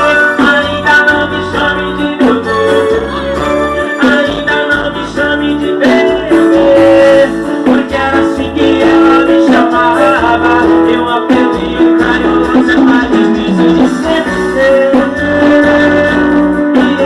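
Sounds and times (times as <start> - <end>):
band music with plucked strings: 0.0 - 17.0
steady bass line: 0.0 - 17.0.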